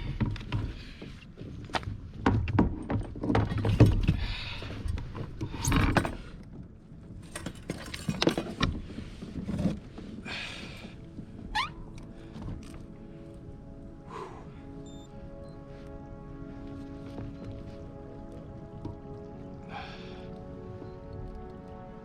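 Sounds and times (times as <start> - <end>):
knocks and thuds against a kayak: 1.8 - 4.3.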